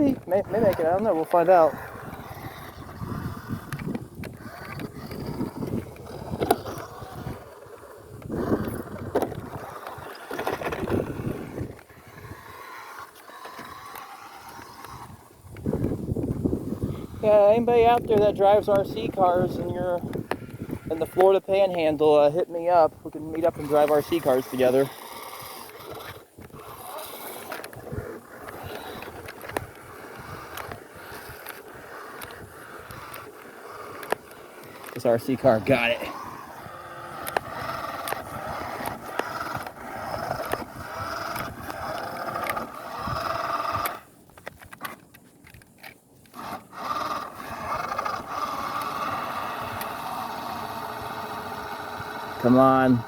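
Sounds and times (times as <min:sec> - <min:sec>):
small electric motor whining: 0:00.0 - 0:53.0
wheels scraping through dirt: 0:00.0 - 0:53.0
scattered clicks: 0:23.4 - 0:50.5.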